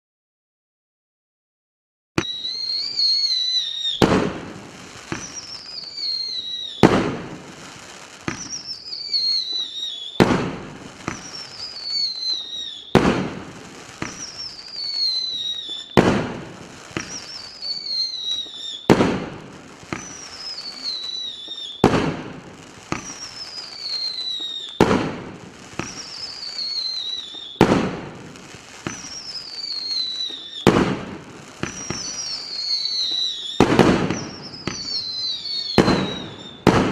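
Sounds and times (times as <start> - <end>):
falling whistle: 2.2 - 4.0, 5.1 - 6.8, 8.3 - 10.2, 11.1 - 13.0, 14.0 - 16.0, 17.0 - 18.9, 19.9 - 21.8, 23.0 - 24.8, 25.8 - 27.6, 28.9 - 30.7, 31.6 - 36.8
firework bang: 4.0 - 5.5, 6.8 - 8.6, 10.2 - 11.5, 12.9 - 14.6, 15.2 - 17.4, 18.9 - 20.3, 21.8 - 23.4, 24.0 - 26.8, 27.6 - 29.4, 30.3 - 36.9.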